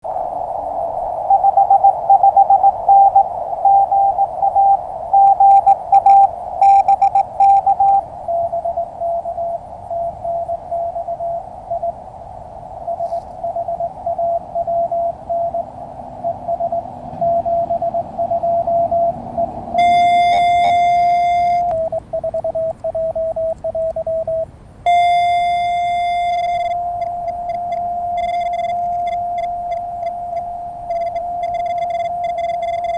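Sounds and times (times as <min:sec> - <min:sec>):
receiver hiss: 0:00.0 - 0:17.8, 0:19.8 - 0:32.9
morse code tones: 0:01.3 - 0:08.6, 0:19.8 - 0:32.9
long unbroken tone: 0:19.8 - 0:21.9, 0:24.9 - 0:32.9.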